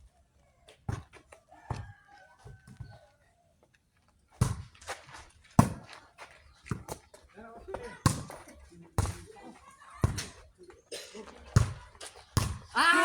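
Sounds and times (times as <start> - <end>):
distant rooster crowing: 1.5 - 3.0.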